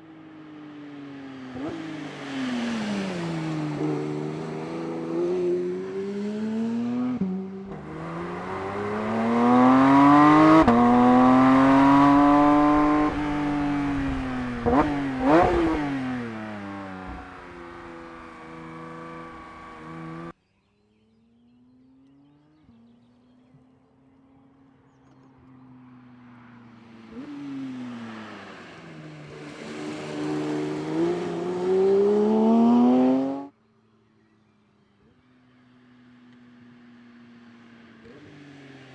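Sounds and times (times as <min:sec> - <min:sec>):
sports car engine accelerating hard: 0:01.5 - 0:20.4, 0:21.8 - 0:33.6.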